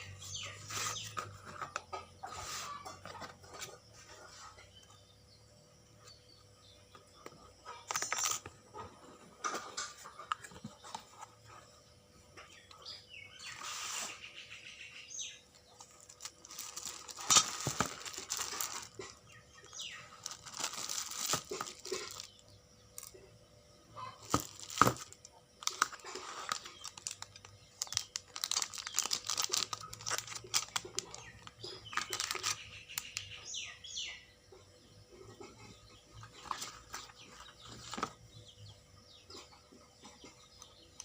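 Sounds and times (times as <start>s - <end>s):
packaging crinkling and tearing: 7.9s - 8.5s, 15.8s - 22.4s, 24.2s - 33.2s.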